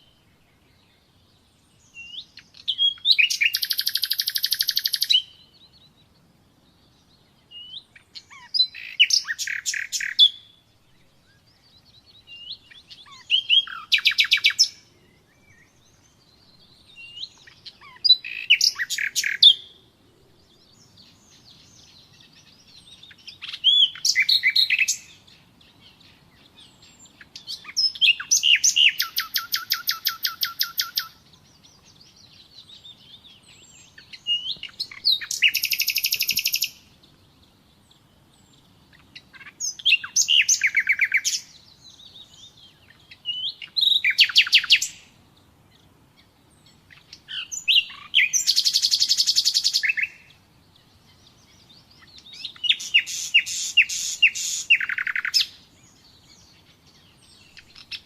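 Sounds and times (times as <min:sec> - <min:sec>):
nightingale singing: 0:00.0 - 0:58.0.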